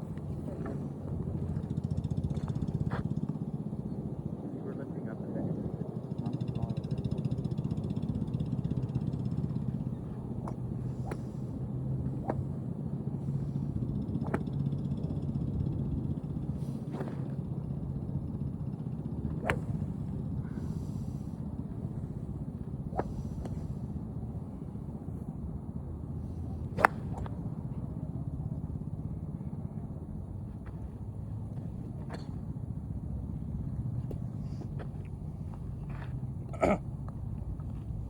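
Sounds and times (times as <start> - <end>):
steady low rumble: 0.0 - 38.0
golf clubs striking balls: 9.0 - 14.7, 19.0 - 25.2, 26.0 - 27.9.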